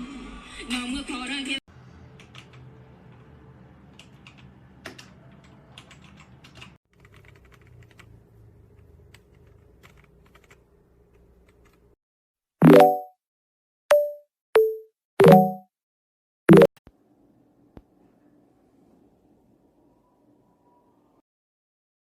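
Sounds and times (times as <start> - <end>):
mechanical keyboard keystrokes: 3.9 - 8.1, 8.8 - 10.6.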